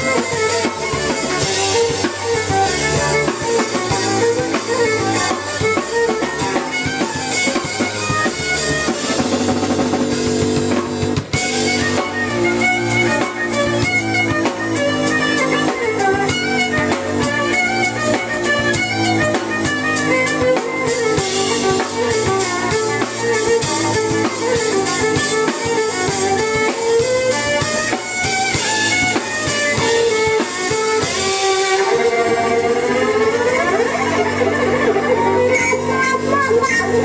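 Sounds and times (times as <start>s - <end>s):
drum kit: 0.0s - 37.0s
keyboard: 0.0s - 37.0s
violin melody: 0.0s - 37.0s.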